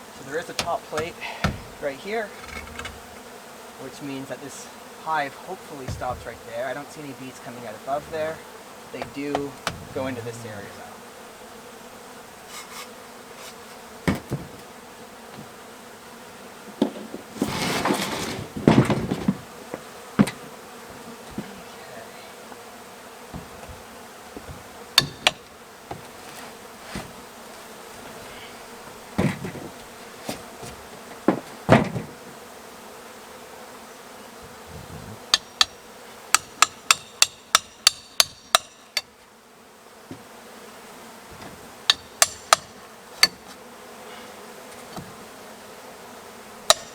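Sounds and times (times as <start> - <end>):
bees buzzing: 0.0 - 46.9
knocks and scraping on wood: 0.2 - 3.3, 5.7 - 10.6, 12.4 - 15.6, 16.6 - 21.7, 23.2 - 32.5, 40.0 - 40.4, 41.2 - 43.7, 44.6 - 45.3
hammer strikes: 9.0 - 10.2, 25.0 - 25.5, 36.4 - 39.1, 41.9 - 43.4.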